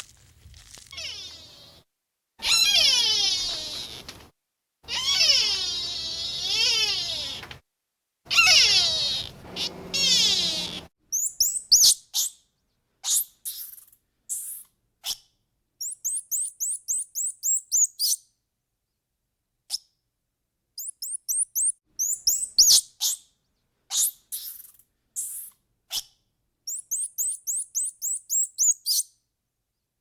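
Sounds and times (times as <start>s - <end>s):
small bird chirping: 0.5s - 1.8s, 2.4s - 4.2s, 4.9s - 7.5s, 8.3s - 12.4s, 13.0s - 15.2s, 15.8s - 18.2s, 20.8s - 29.2s.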